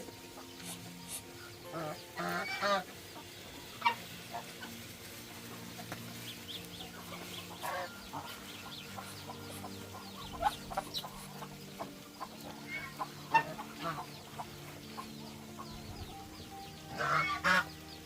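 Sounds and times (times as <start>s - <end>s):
chickens clucking: 0.0s - 18.0s.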